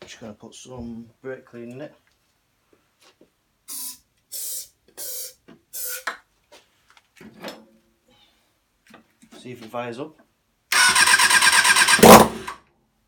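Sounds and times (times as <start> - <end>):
aerosol can spraying: 3.7 - 6.0.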